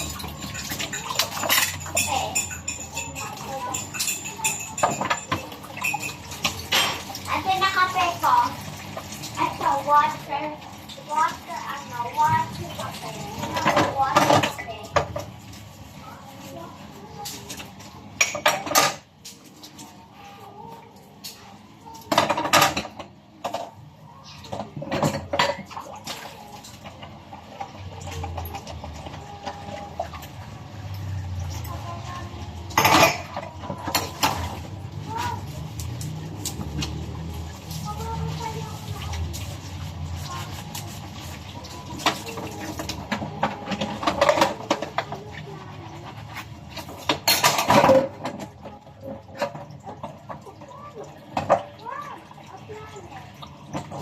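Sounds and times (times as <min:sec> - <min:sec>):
hard objects clattering: 0:00.0 - 0:07.6
dishes and cutlery clattering: 0:00.0 - 0:10.1, 0:10.8 - 0:15.7, 0:17.1 - 0:20.0, 0:21.2 - 0:54.0.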